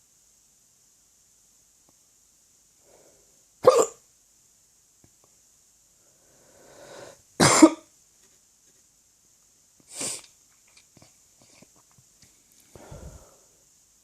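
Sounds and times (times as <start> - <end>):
person hiccuping: 3.6 - 4.0
breath in: 6.0 - 7.2, 12.7 - 13.6.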